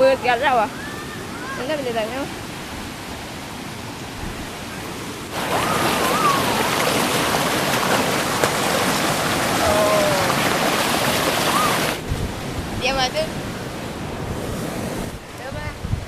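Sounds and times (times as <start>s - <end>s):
waterfall rushing: 3.2s - 15.2s.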